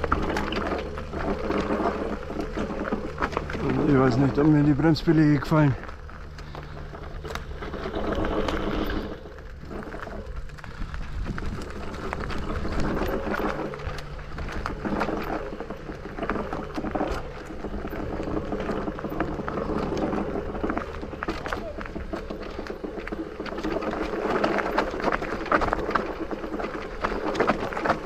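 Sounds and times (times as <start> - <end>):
electric motor hum: 0.0 - 28.0
tyres on rough trail: 0.0 - 28.0.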